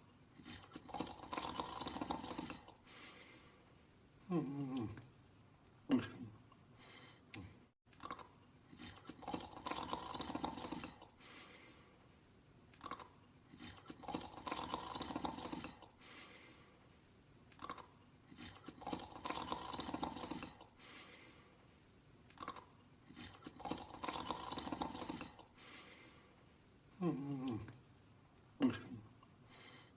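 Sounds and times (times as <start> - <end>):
rasping snores: 0.4 - 2.8, 8.0 - 11.1, 12.8 - 15.9, 17.6 - 20.7, 22.4 - 25.5.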